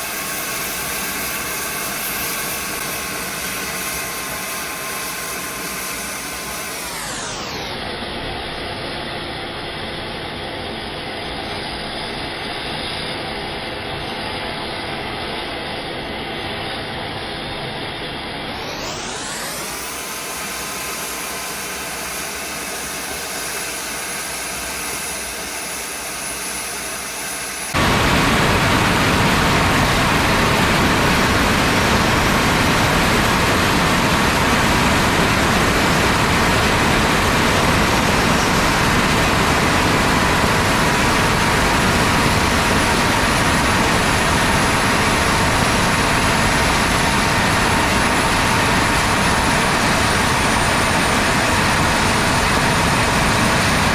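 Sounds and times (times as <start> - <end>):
turbochargers whining: 0.0 - 53.9
rushing air: 27.7 - 53.9.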